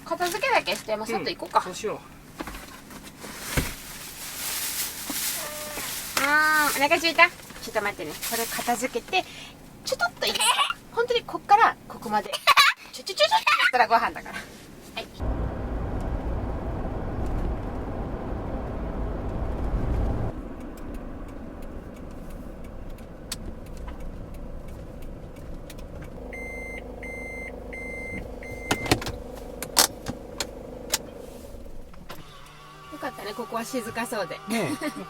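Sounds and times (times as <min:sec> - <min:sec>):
road and engine noise: 0:00.0 - 0:13.0, 0:14.0 - 0:35.0
short high beeps: 0:26.3 - 0:28.9.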